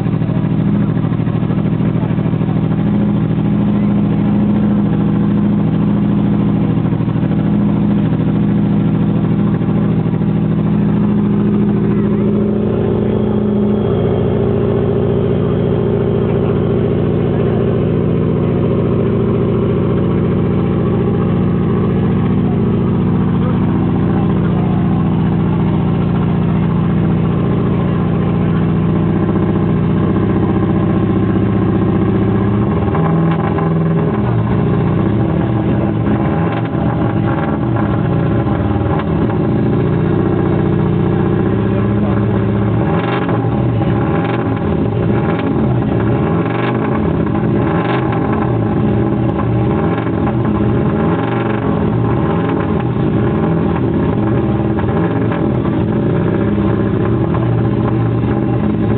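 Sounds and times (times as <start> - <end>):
exhaust cracks: 0.0 - 58.9
rally car engine revving: 0.0 - 58.9.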